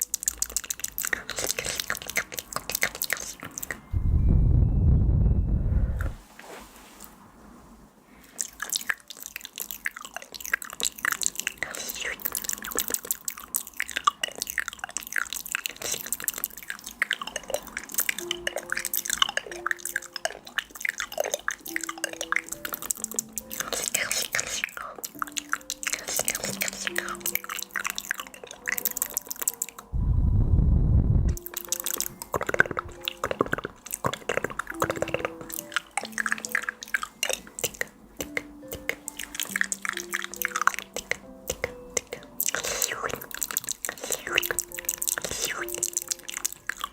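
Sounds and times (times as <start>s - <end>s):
wet clicks and squishes: 0.0s - 3.8s, 8.4s - 29.9s, 31.4s - 46.9s
faint low tones: 3.8s - 6.2s, 29.9s - 31.4s
faint sustained notes: 3.9s - 6.2s
wet clicks and pops: 31.3s - 46.8s.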